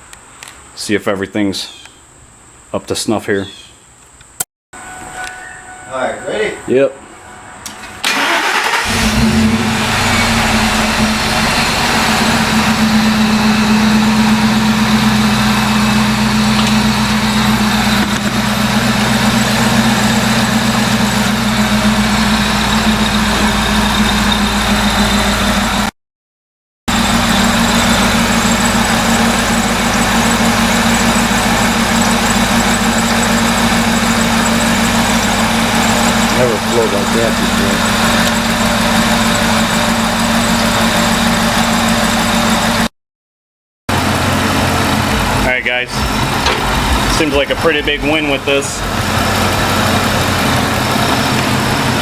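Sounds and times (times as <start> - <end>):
truck engine starting and idling: 7.4 - 25.9, 26.9 - 42.9, 43.9 - 52.0.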